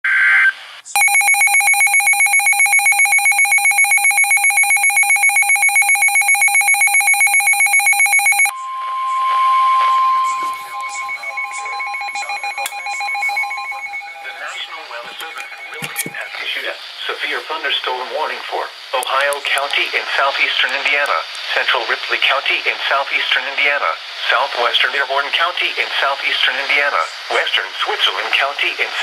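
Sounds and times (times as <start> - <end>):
static: 0.1 - 8.5, 10.4 - 29.0
rapid electronic beeping alarm: 1.0 - 16.0
steady warning tone: 1.0 - 16.4
data burst: 1.0 - 16.5.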